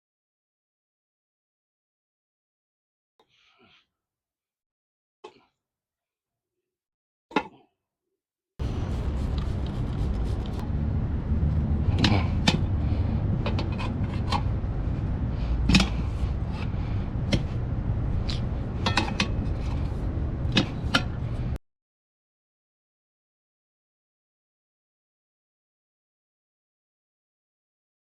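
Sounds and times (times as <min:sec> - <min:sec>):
steady low rumble: 0:08.6 - 0:21.6.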